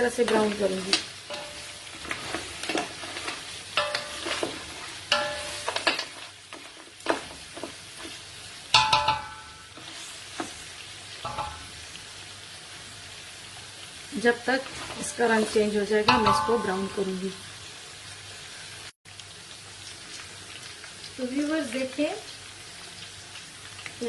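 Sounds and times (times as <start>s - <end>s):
meat sizzling in oil: 0.0s - 24.0s
spoon scraping and knocking pot: 1.3s - 8.2s, 16.1s - 16.8s.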